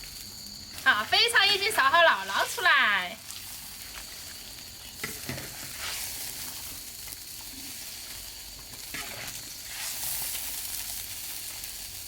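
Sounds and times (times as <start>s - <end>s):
food sizzling in a wok: 0.0s - 12.0s.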